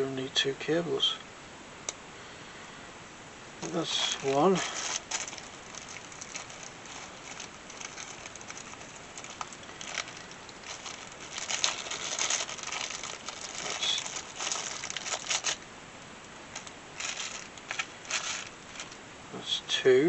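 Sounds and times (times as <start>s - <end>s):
packaging rustling and crackling: 3.6s - 15.7s, 16.5s - 19.0s.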